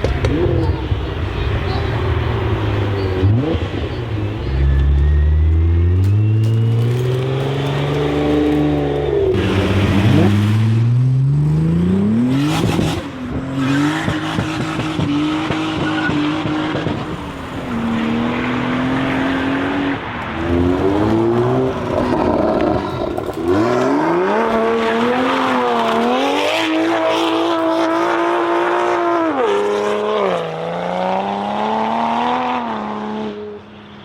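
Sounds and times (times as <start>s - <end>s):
engine revving: 0.0s - 33.4s.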